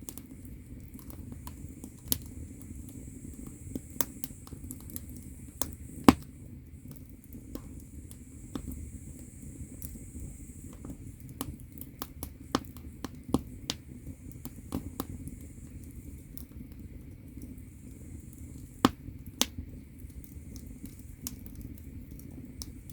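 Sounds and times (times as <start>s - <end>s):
burning logs popping and snapping: 0.0s - 22.9s
wood fire crackling: 0.0s - 22.9s.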